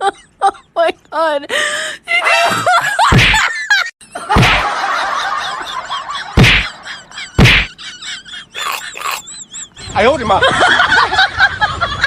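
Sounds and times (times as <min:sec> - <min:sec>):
loud sudden thumps: 0:06.4 - 0:06.7, 0:07.4 - 0:07.7.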